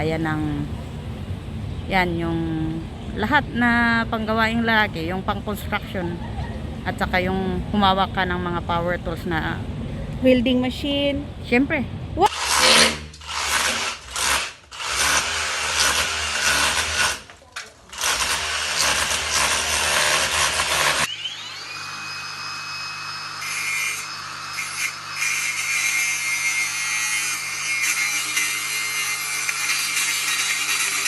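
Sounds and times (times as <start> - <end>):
power tool cutting: 12.3 - 31.0
motor spinning with high whine: 18.0 - 25.4.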